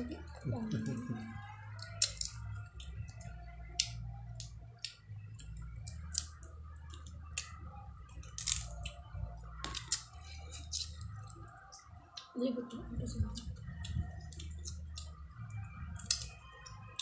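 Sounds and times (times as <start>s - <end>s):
low steady hum: 0.0s - 17.0s
chewing and cracking shell: 1.7s - 3.2s, 3.8s - 7.6s, 8.2s - 11.4s, 13.4s - 15.2s, 16.0s - 17.0s.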